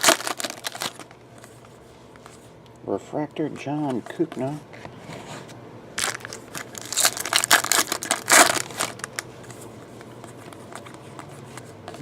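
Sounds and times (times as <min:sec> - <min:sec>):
foil wrapper tearing and crinkling: 0:00.0 - 0:01.1, 0:06.0 - 0:09.2.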